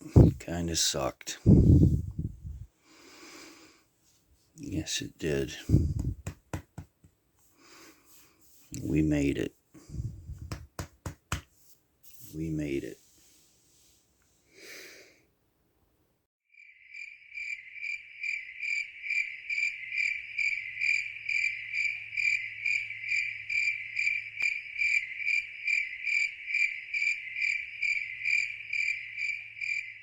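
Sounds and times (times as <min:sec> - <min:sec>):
cricket chirping: 0:16.5 - 0:30.0.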